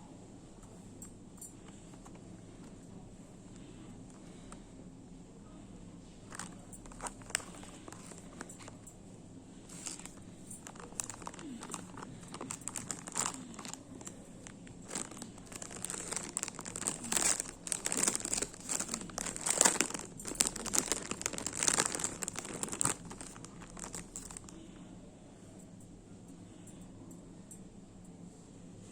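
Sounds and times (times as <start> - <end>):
packaging crinkling and tearing: 6.3 - 8.8, 9.7 - 24.6.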